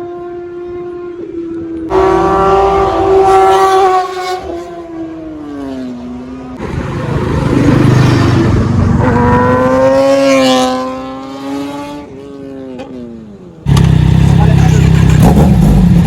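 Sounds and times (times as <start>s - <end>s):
motorcycle passing by: 0.0s - 16.0s
rush of noise: 6.6s - 9.9s.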